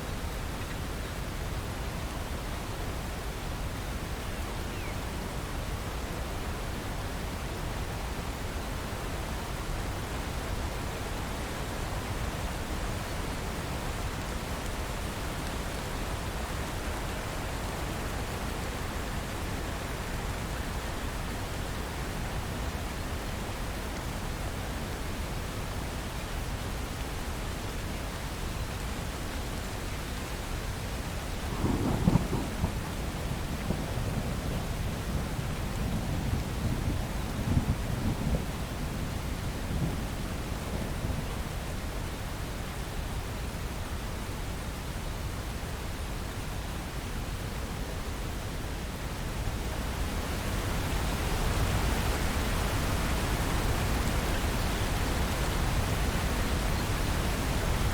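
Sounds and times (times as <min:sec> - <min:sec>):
steady rain: 0:00.0 - 0:57.9
thunder burst: 0:31.6 - 0:33.0.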